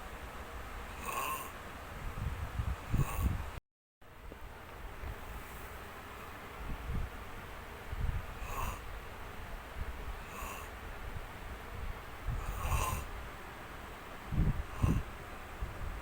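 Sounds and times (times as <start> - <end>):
person snoring: 1.0 - 1.5, 2.9 - 3.4, 8.4 - 8.8, 10.2 - 10.7, 12.4 - 13.1, 14.6 - 15.1.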